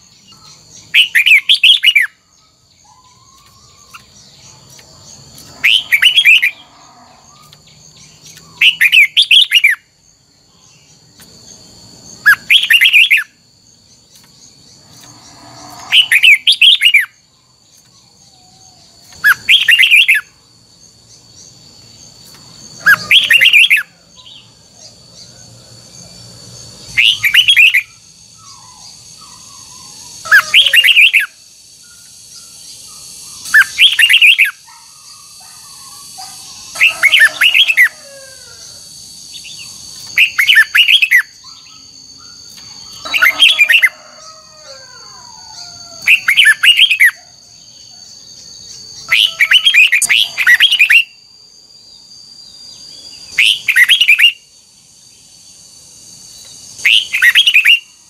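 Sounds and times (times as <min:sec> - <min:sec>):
bird singing fluty phrases: 0:00.0 - 0:09.9, 0:12.2 - 0:20.4, 0:44.7 - 0:51.2.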